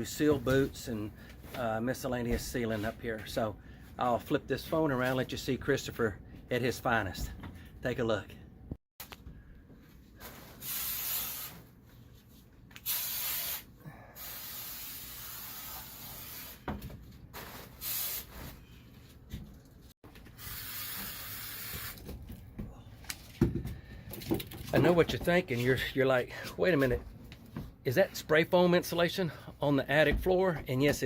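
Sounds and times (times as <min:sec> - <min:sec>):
spray foam gun hissing: 0:10.6 - 0:11.6, 0:12.8 - 0:16.6, 0:20.4 - 0:22.0.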